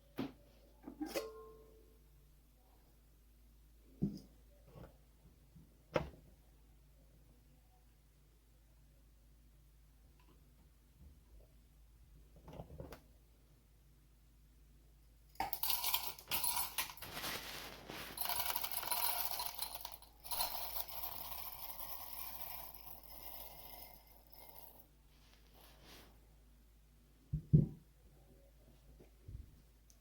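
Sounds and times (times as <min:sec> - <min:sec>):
coffee beans rattling in metal bowl: 0:15.4 - 0:24.9.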